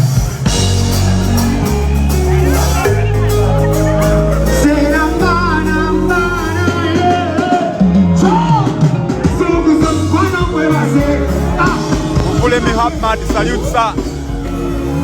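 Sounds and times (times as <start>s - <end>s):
loud music with heavy bass: 0.0s - 15.0s
person singing: 0.5s - 15.0s.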